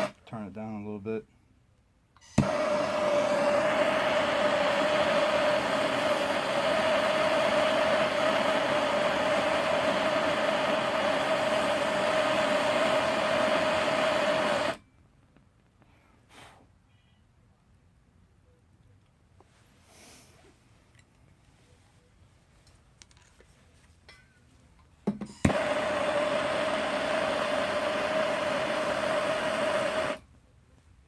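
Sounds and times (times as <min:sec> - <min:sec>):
propane torch hissing: 0:02.3 - 0:14.8, 0:25.4 - 0:30.2.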